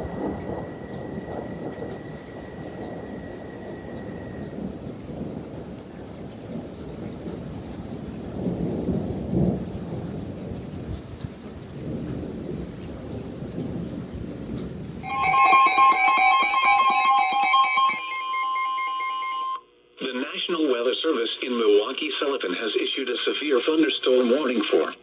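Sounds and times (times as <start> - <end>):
emergency alert electronic tones: 0.0 - 4.7, 15.0 - 19.7
rain: 0.0 - 17.8
thunder rolling: 0.0 - 18.2.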